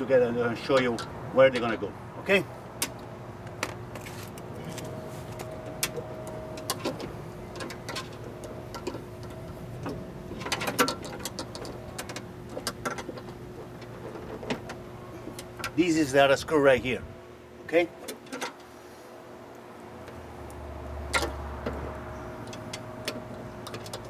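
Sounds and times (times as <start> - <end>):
tools and metal parts clicking: 0.6 - 1.8, 4.0 - 15.8, 21.1 - 24.0.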